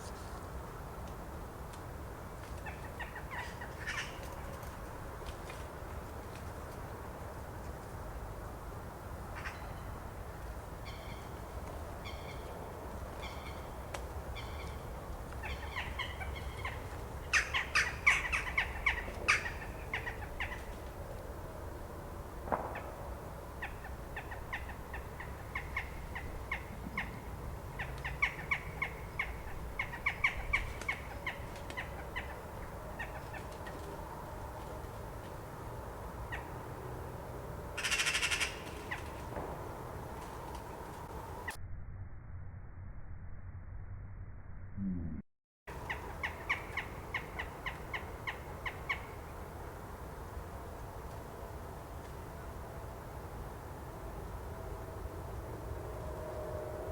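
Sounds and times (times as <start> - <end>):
jackdaws calling: 15.4 - 20.7, 37.8 - 39.2, 45.7 - 49.3
steady low rumble: 38.8 - 48.2.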